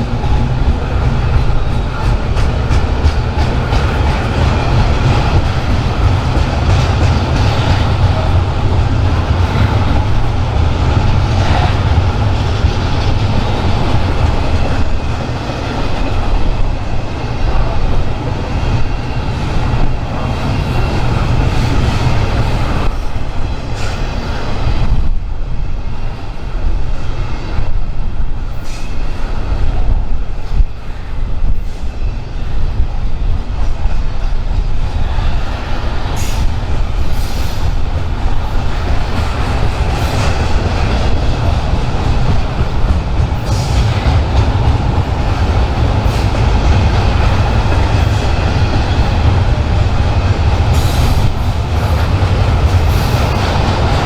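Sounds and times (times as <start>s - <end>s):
train rumble: 0.0s - 54.0s.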